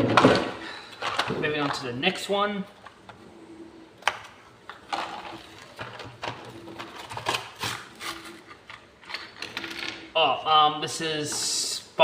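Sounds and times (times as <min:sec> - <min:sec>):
packaging rustling and crinkling: 0:04.8 - 0:09.2.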